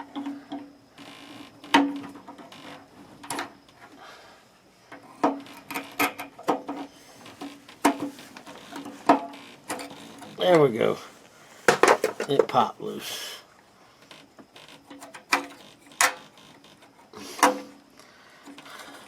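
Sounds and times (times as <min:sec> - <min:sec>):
sharp clicks knocks and scrapes: 0:04.9 - 0:10.4, 0:14.7 - 0:17.8.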